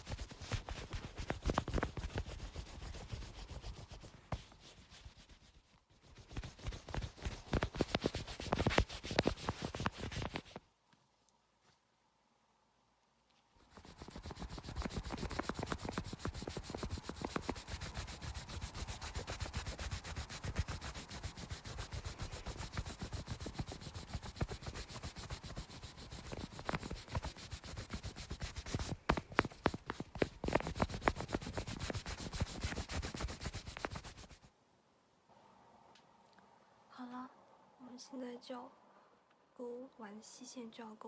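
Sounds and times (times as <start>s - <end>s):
eraser rubbing on paper: 0.0s - 10.6s, 13.6s - 34.5s.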